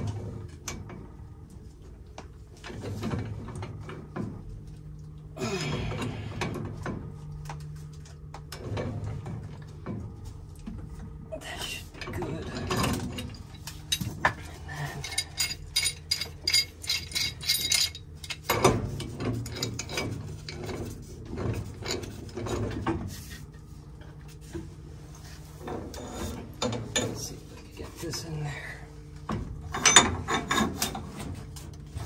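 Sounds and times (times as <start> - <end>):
steady low hum: 0.0 - 32.0
metallic clicks and scraping: 12.0 - 23.5.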